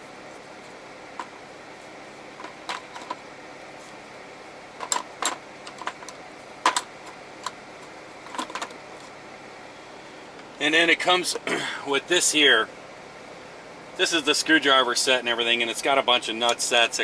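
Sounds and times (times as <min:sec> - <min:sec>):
low hum: 0:00.0 - 0:15.8.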